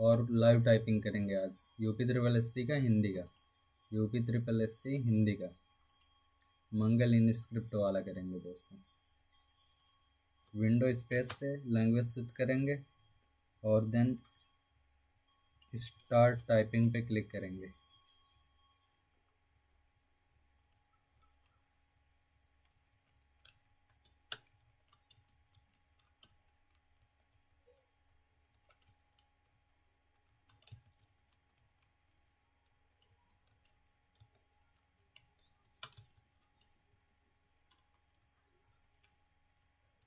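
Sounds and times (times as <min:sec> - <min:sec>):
keyboard keystrokes: 0:30.2 - 0:31.9, 0:33.0 - 0:36.8.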